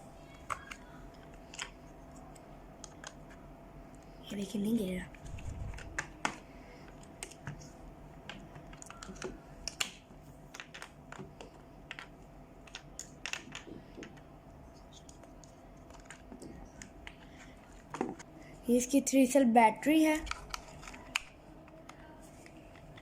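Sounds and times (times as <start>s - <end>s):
plastic toy parts clicking: 20.2s - 22.0s.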